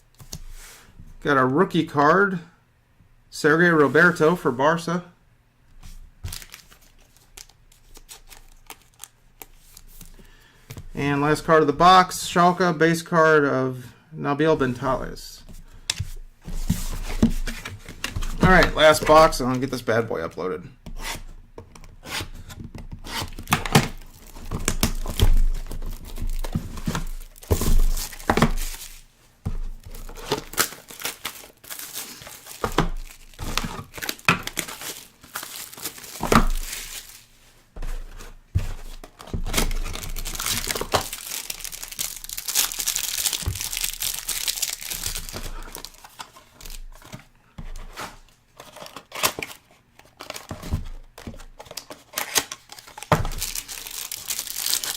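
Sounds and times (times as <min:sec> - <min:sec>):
plastic wrapping crinkling: 0:06.3 - 0:10.2, 0:23.3 - 0:47.2, 0:51.4 - 0:54.9.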